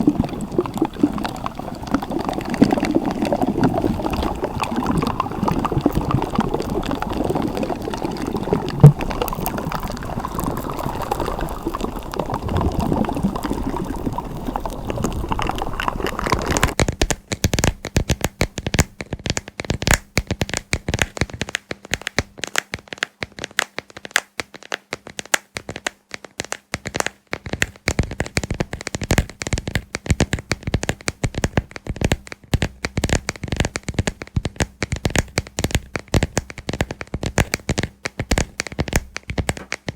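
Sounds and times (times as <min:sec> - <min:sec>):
slime popping: 0:00.0 - 0:16.8
slime squelching and crackling: 0:00.0 - 0:17.8.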